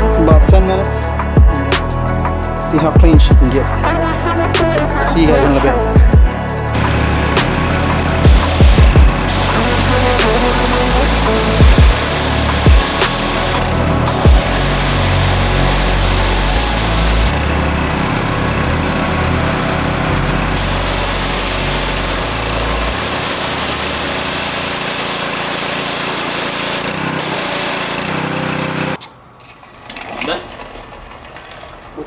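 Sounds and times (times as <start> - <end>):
pressure washer motor running: 0.0 - 29.0
water jet hissing on metal: 6.7 - 17.4, 20.6 - 28.7.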